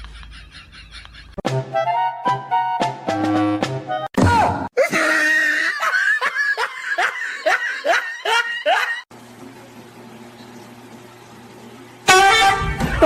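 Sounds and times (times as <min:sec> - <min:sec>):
person laughing: 0:00.0 - 0:01.4, 0:04.8 - 0:09.1
loud cry: 0:04.2 - 0:06.3.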